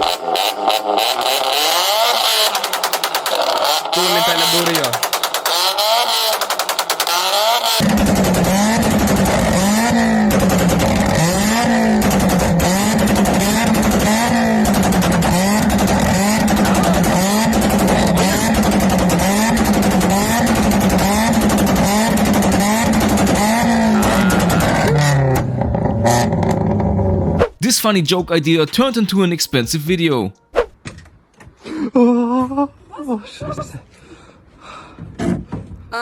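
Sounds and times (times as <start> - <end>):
loud car exhaust revving: 0.0 - 2.7, 7.1 - 27.4
rapid rattling crackle: 2.6 - 3.9.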